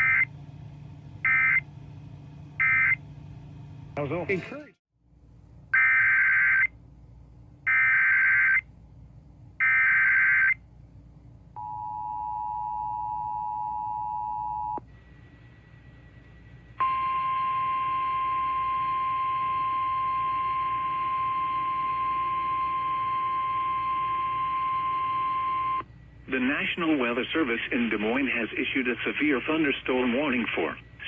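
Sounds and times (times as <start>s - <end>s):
steady single-tone warning alarm: 1.2s - 1.7s, 2.6s - 3.0s, 5.8s - 6.7s, 7.7s - 8.6s, 9.6s - 10.6s, 16.8s - 25.8s.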